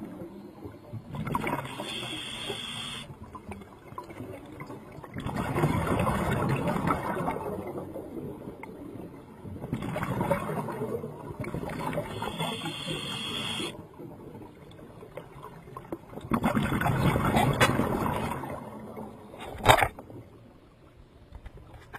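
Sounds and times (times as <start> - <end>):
water sloshing and gurgling: 0.0 - 21.9
high hiss: 1.7 - 3.1, 12.2 - 13.7.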